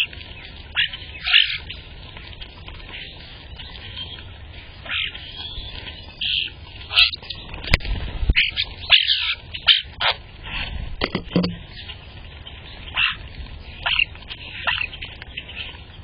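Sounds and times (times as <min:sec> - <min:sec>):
small birds chirping: 0:00.0 - 0:16.0.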